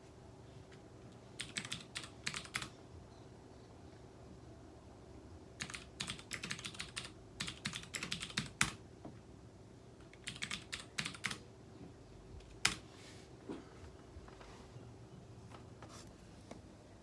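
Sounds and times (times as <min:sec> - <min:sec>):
computer keyboard typing: 0:01.4 - 0:02.8, 0:05.6 - 0:08.8, 0:10.0 - 0:11.4, 0:12.4 - 0:12.9.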